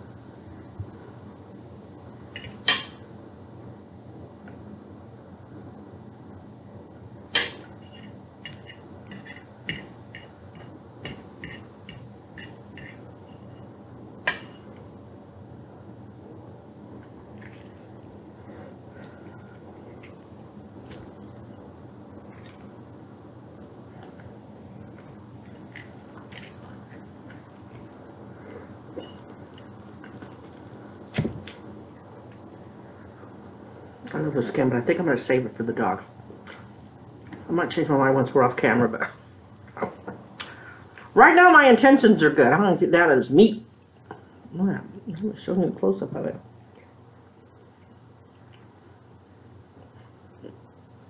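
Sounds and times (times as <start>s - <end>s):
low room hum: 0.0s - 51.0s
faint chewing: 23.6s - 32.4s.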